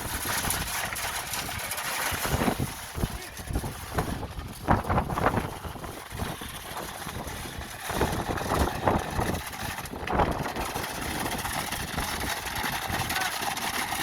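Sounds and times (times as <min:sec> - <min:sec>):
diesel truck engine running: 0:00.0 - 0:14.0.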